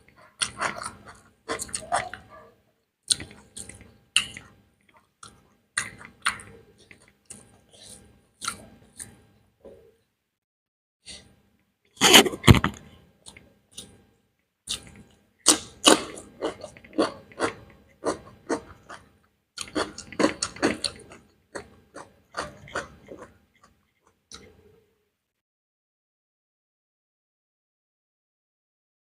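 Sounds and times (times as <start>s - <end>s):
chewing and mouth smacks: 0.4s - 2.3s, 3.1s - 9.2s, 14.7s - 24.6s.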